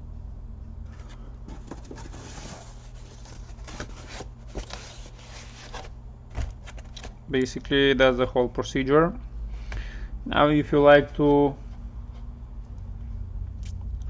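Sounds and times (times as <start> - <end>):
steady low hum: 0.0 - 14.0
rubbing and rustling: 0.9 - 7.2.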